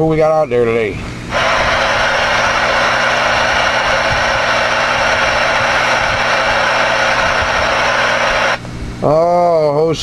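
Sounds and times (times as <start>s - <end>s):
radio static hiss: 1.3s - 8.6s.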